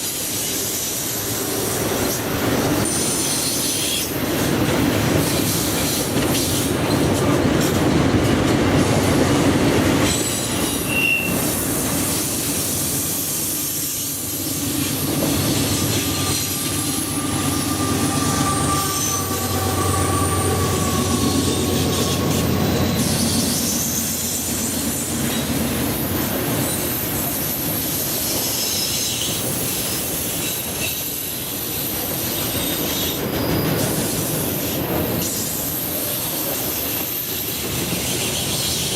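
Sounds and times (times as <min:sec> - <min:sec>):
train wheels rumbling on rails: 0:00.0 - 0:38.9
high-pitched wheel squeal: 0:10.1 - 0:11.6, 0:14.8 - 0:25.5.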